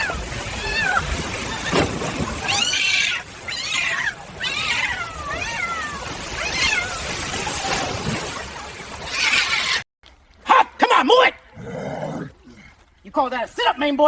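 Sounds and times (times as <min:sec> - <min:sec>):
cat meowing: 0:02.5 - 0:07.2.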